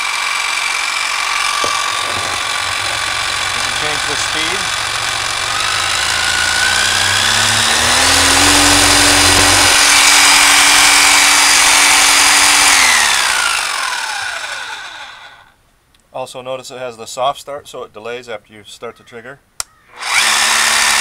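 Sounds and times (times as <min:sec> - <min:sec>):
electric drill motor whining: 0:00.0 - 0:15.5, 0:19.9 - 0:21.0.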